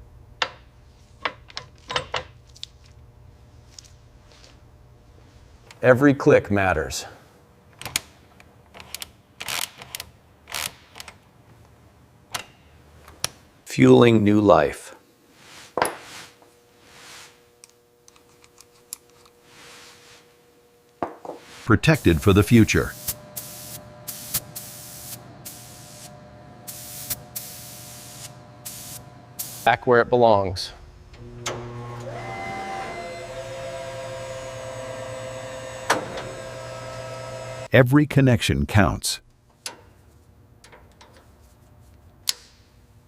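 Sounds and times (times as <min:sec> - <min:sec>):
aerosol spray hissing: 0:21.9 - 0:29.8.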